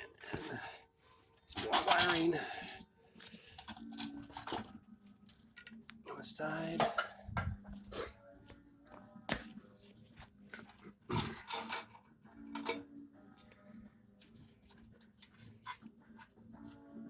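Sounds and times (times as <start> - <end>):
wiring harness clicks and rattles: 1.4 - 2.6, 3.2 - 7.9, 10.6 - 13.5.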